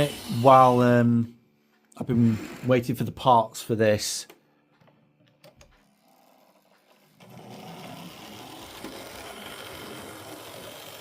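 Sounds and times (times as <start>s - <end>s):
small machine whirring: 0.0s - 0.9s, 5.4s - 11.0s.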